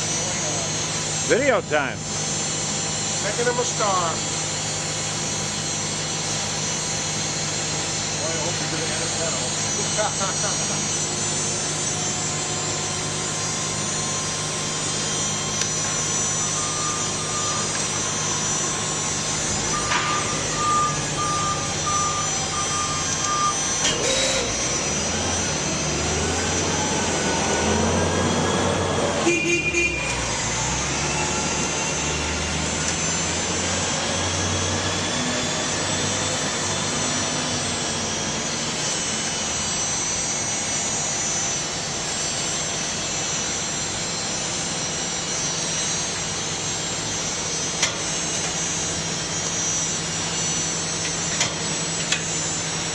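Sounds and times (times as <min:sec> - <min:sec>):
machinery hum: 0:00.0 - 0:52.9
motor rising and falling in pitch: 0:00.0 - 0:52.9
short high beeps: 0:19.6 - 0:24.6.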